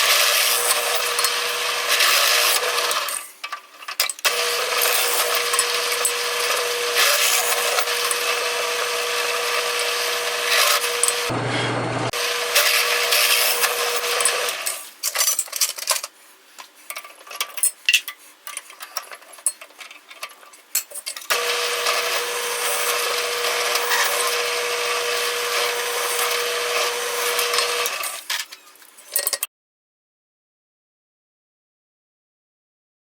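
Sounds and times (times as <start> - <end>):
power tool cutting wood: 0.0 - 3.2, 4.3 - 14.8, 21.3 - 28.2.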